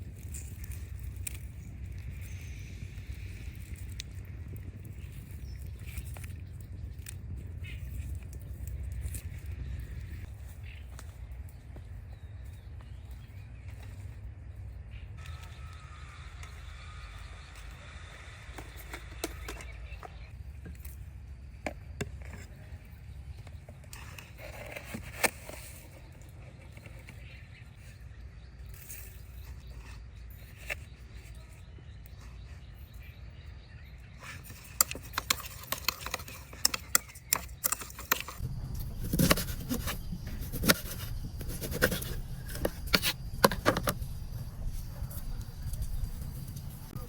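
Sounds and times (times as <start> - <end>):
scraping: 34.2 - 47.0
sharp clicks and knocks: 34.5 - 44.1
low steady hum: 36.2 - 47.0.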